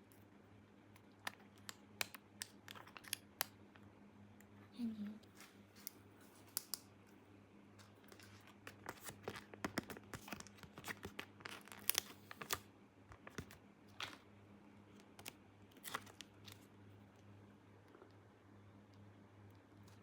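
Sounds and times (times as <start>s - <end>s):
faint steady hum: 0.0s - 20.0s
packaging tearing and crinkling: 8.6s - 12.6s, 15.2s - 16.6s.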